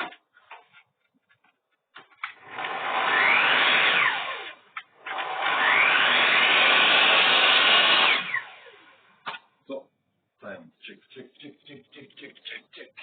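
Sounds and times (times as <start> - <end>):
cutting machine motor whining: 2.5 - 8.9.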